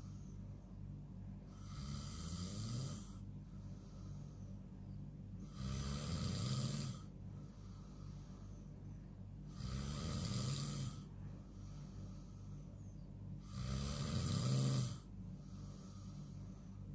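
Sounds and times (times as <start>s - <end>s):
person snoring: 1.5s - 3.2s, 5.4s - 8.2s, 9.5s - 12.5s, 13.4s - 16.7s.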